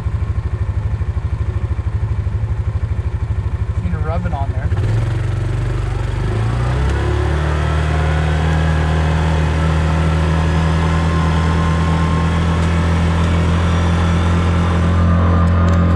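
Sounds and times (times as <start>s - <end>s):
vehicle engine revving: 3.2s - 15.9s.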